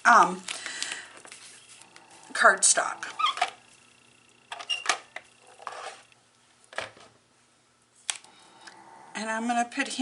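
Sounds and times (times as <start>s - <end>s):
paper being handled: 0.5s - 2.0s.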